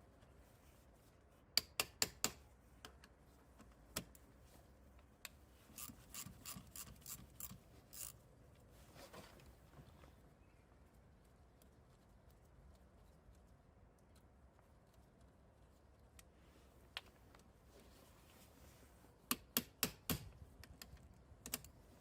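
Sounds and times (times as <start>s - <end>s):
socket ratchet clicking: 5.8s - 8.2s.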